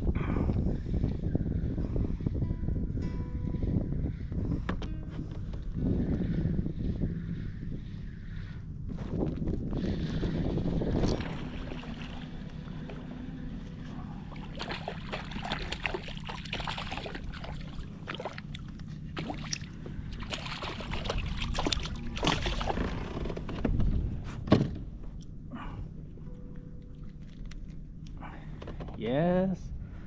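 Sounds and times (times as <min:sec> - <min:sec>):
steady low rumble: 0:00.0 - 0:30.0
water splashing against kayak: 0:09.8 - 0:23.8.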